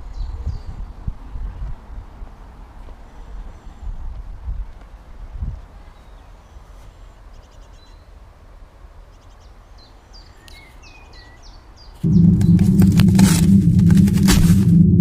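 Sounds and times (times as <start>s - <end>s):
outdoor background hiss: 1.9s - 12.1s
small birds chirping and trilling: 9.1s - 12.2s
low rumble: 12.0s - 15.0s.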